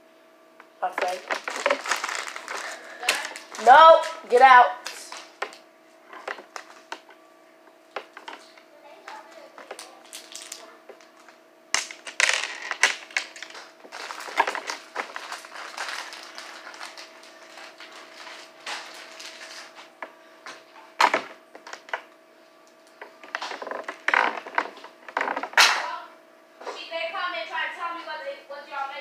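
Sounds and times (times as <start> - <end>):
faint steady hum: 0.0 - 29.0.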